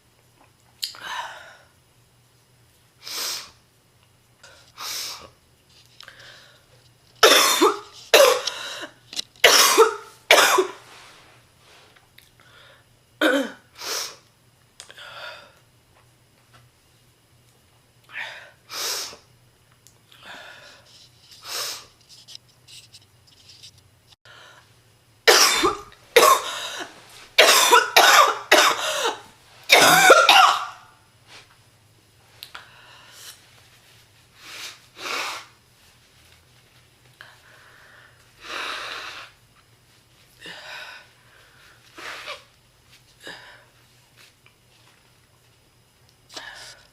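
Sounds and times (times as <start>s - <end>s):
woman coughing: 7.2s - 8.5s, 9.4s - 10.8s, 13.2s - 13.7s, 25.3s - 30.9s.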